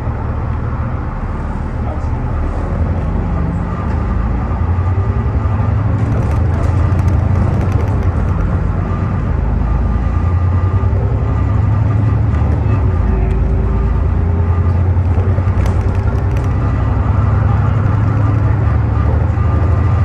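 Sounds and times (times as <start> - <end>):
bus engine drone: 0.0 - 20.0
fast metallic rattling: 6.0 - 9.2, 14.7 - 19.6.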